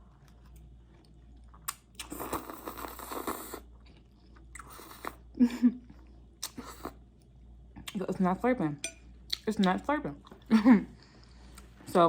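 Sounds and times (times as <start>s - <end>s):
chewing spaghetti: 0.0s - 5.2s.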